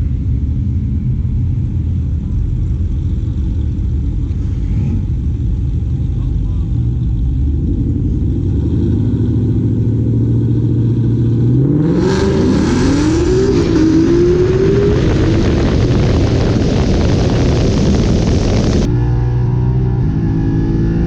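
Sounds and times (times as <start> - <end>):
car engine revving: 0.0 - 21.0
rush of noise: 0.0 - 21.0
tires spinning: 7.0 - 20.6.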